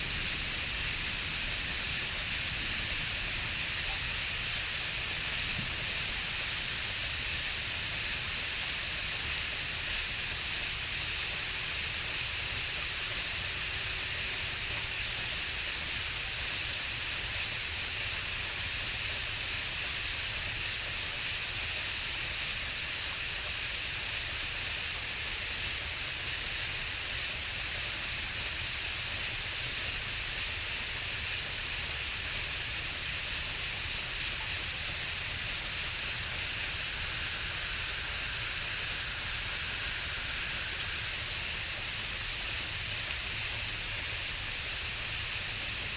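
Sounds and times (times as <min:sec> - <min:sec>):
low steady rumble: 0:00.0 - 0:13.4, 0:29.2 - 0:45.9
frogs and insects chorus: 0:00.0 - 0:45.9.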